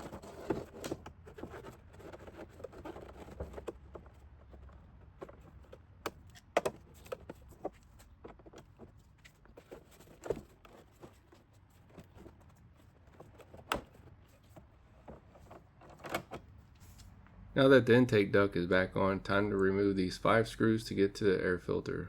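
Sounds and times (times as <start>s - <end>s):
plastic clicks and knocks: 0.0s - 11.2s.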